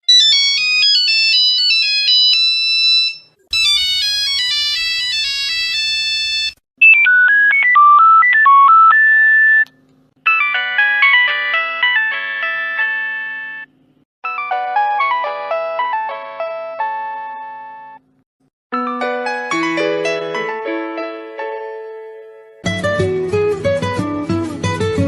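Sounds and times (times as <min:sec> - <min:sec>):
mobile phone ringtones: 0:00.1 - 0:09.7, 0:10.3 - 0:13.7.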